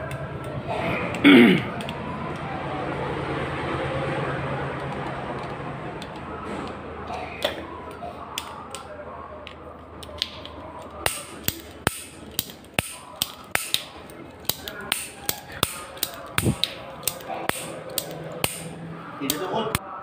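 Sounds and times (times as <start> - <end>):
clicks of small parts handled: 7.4 - 18.7.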